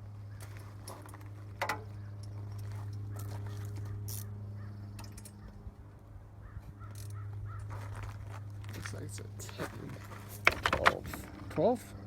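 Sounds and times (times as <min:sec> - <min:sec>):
low hum: 0:00.0 - 0:12.0
crow cawing: 0:06.4 - 0:07.8.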